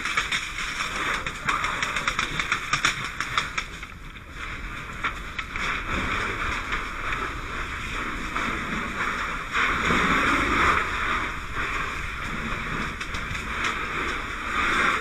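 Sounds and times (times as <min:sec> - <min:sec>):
fire hose spraying water: 0:04.2 - 0:15.0.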